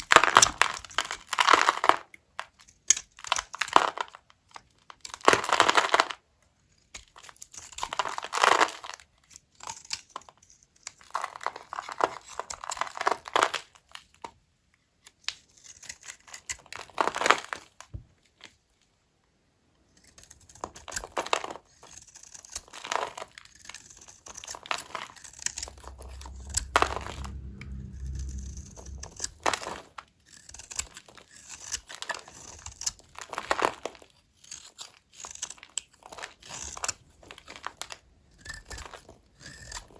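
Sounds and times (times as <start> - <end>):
low rumble: 25.1 - 30.0.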